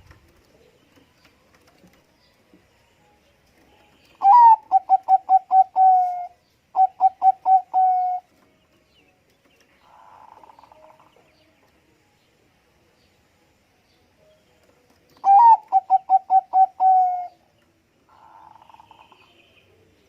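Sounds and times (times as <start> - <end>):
dove cooing: 4.2 - 8.3, 15.2 - 17.4.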